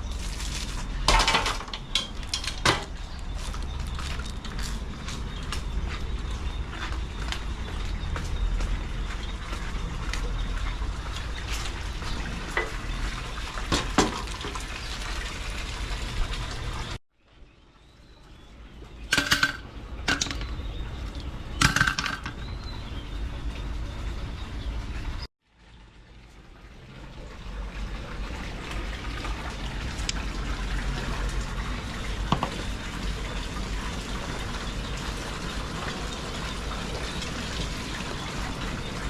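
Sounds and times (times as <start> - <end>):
pouring water rushing: 0.0 - 17.0, 25.0 - 39.0.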